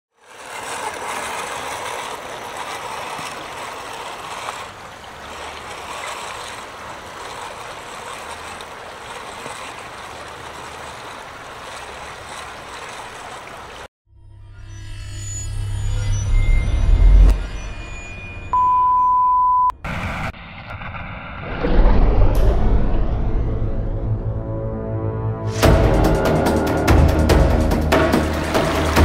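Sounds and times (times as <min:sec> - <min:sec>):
creek water rushing over rocks: 0:00.2 - 0:13.9, 0:28.0 - 0:29.0.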